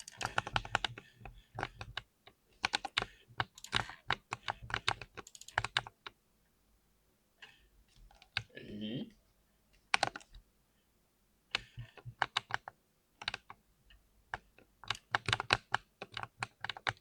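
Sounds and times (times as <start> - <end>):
mechanical keyboard typing: 0.0 - 6.0, 9.9 - 10.3, 11.6 - 13.5, 14.4 - 17.0.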